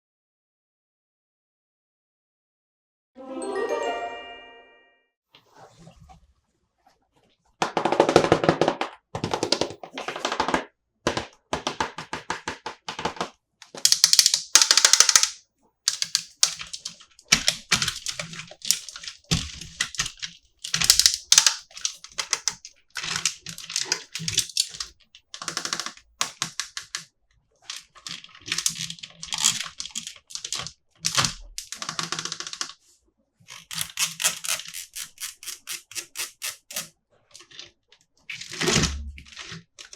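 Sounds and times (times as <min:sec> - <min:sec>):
packaging crackling and clicking: 0:13.6 - 0:27.0, 0:27.7 - 0:32.8, 0:33.5 - 0:37.7.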